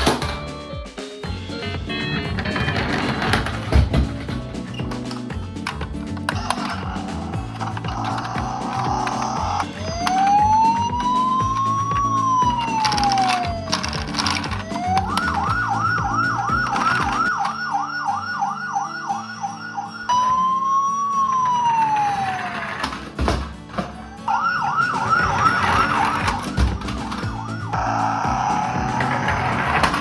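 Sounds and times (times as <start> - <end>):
fast yelping toy siren: 6.3 - 22.8, 24.0 - 30.0
slow wailing toy siren: 6.3 - 22.9, 24.0 - 30.0.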